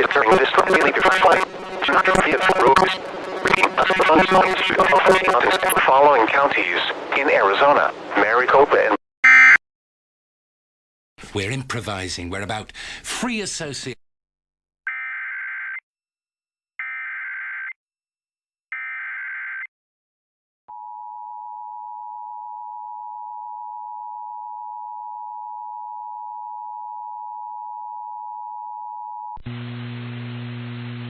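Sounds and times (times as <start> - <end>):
rapid warbling data bursts: 0.3 - 5.8
steady two-tone alert signal: 0.3 - 5.8.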